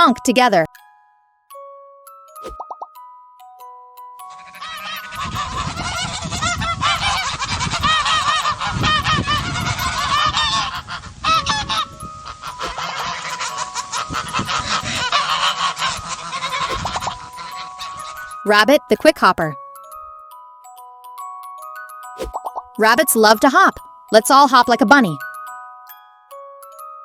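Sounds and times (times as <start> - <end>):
geese honking: 4.3 - 18.6.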